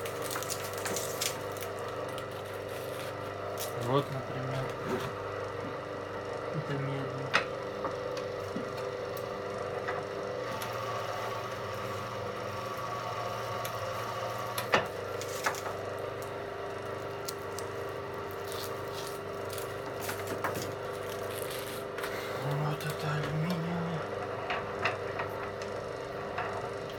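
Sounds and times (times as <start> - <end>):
cable stripping machine motor hum: 0.0 - 26.9.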